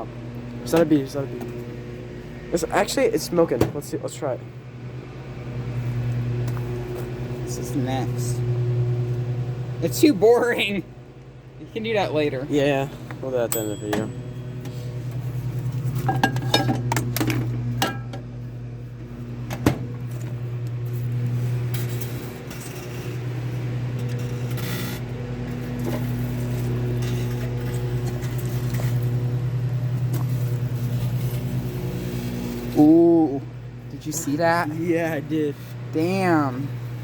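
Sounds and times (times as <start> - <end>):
microwave oven humming: 0.0 - 37.0.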